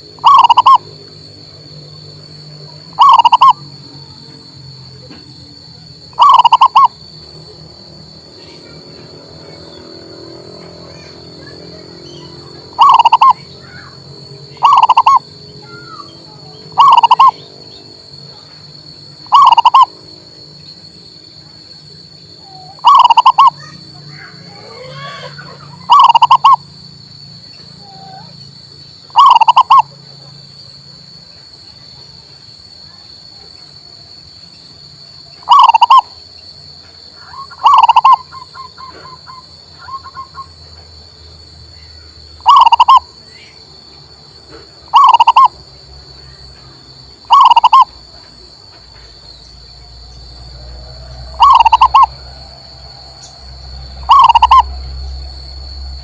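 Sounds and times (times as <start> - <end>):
dove cooing: 0.2 - 0.8, 3.0 - 3.6, 6.2 - 6.9, 12.8 - 13.4, 14.6 - 15.2, 16.7 - 17.4, 19.3 - 19.9, 22.5 - 23.6, 25.8 - 26.6, 29.2 - 29.9, 35.5 - 36.0, 37.3 - 40.4, 42.4 - 43.0, 44.9 - 45.5, 47.3 - 47.9, 51.3 - 52.2, 54.0 - 54.8.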